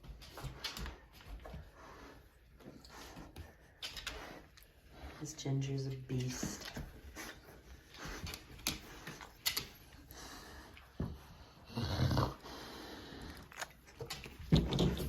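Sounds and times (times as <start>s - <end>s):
dog breathy sound: 6.5s - 13.9s
light clicks and taps: 8.0s - 10.1s.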